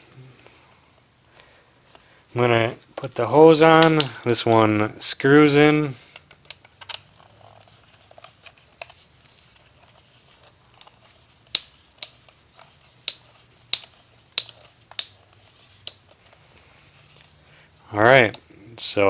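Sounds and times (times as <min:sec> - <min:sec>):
tire inflator hose clicks: 0:11.5 - 0:12.2, 0:13.0 - 0:15.2.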